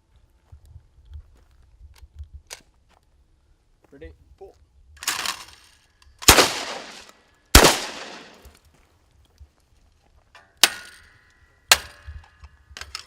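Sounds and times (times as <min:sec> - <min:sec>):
shotgun shots echoing: 0:06.2 - 0:08.5
sharp metallic gun cracks: 0:06.2 - 0:08.6, 0:10.6 - 0:12.1.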